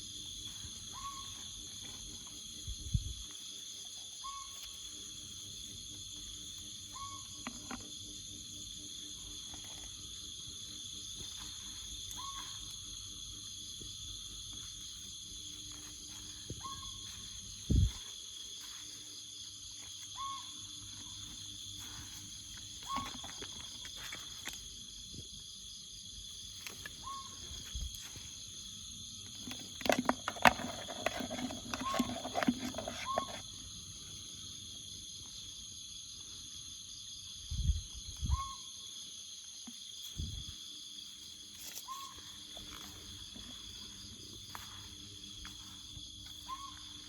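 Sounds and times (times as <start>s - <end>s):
insect chorus chirring: 0.0s - 47.0s
clicks and rustling: 29.4s - 33.4s.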